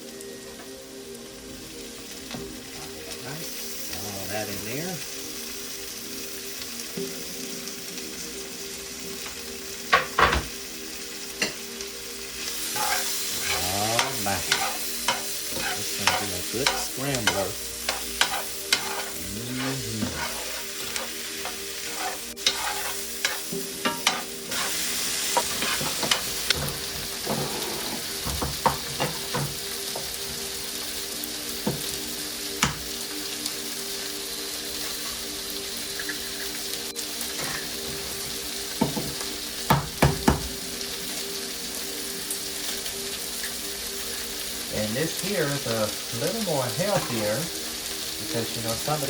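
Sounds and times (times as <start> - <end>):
food sizzling in a pan: 0.0 - 49.0
utensil scraping a pan: 12.6 - 26.3, 27.1 - 28.2.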